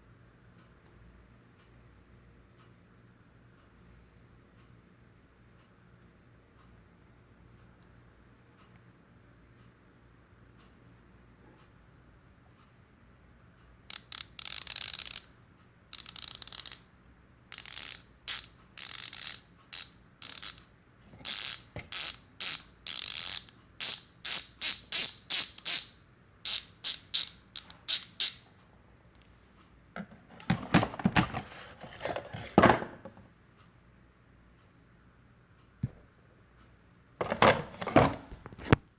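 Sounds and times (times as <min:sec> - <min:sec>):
bicycle freehub ratchet buzzing: 0:13.9 - 0:15.3, 0:15.9 - 0:16.8, 0:17.5 - 0:20.6, 0:21.2 - 0:28.4.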